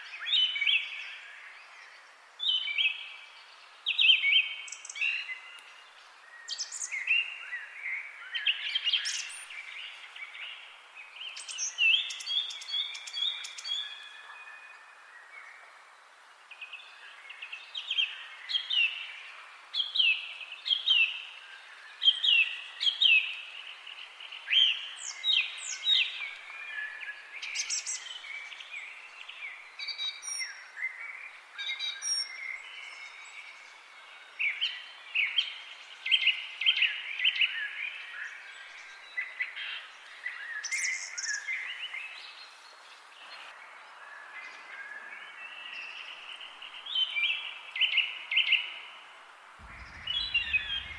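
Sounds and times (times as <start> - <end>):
steady soft hiss: 49.1 - 50.9
birds chirping: 49.6 - 50.9
thin high bird calls: 49.6 - 50.9.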